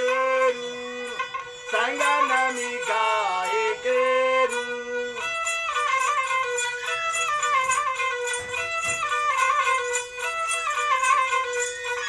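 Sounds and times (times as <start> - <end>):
reedy melody instrument: 0.0 - 12.0
steady percussion beat: 7.0 - 11.8.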